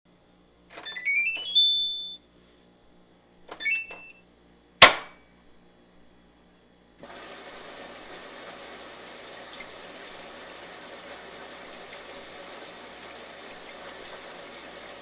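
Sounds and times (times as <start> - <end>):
control panel beeping: 0.8 - 2.2, 3.5 - 4.2
sharp loud click: 4.8 - 5.2.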